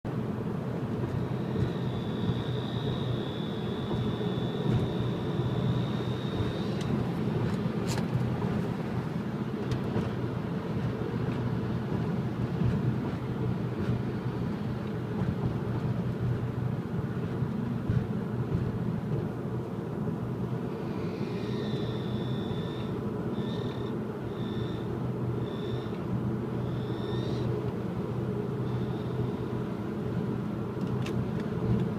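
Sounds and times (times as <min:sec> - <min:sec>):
car engine running: 0:00.1 - 0:31.9
high-pitched turbo whistle: 0:01.2 - 0:06.9, 0:20.7 - 0:26.0, 0:26.6 - 0:27.5, 0:28.6 - 0:29.5.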